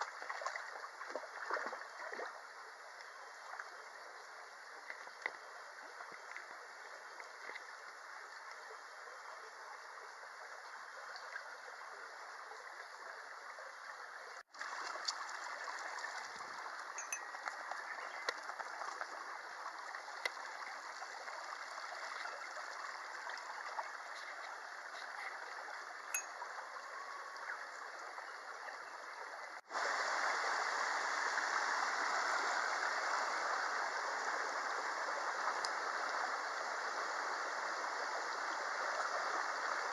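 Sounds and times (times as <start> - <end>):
stream rushing over rocks: 29.6 - 39.9.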